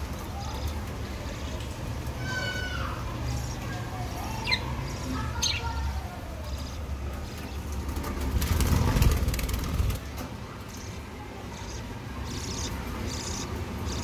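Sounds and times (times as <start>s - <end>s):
budgerigars chirping: 11.6s - 14.0s.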